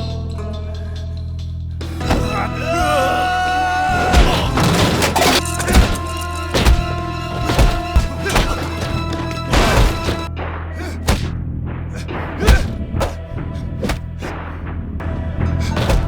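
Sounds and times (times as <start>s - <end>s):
punch impact hits: 4.1s - 14.5s, 15.7s - 16.0s.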